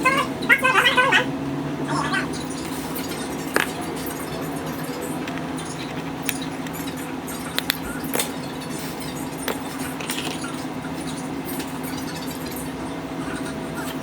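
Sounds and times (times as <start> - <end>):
steady hum: 1.2 - 14.0
metal tools tapping phone: 2.4 - 12.4.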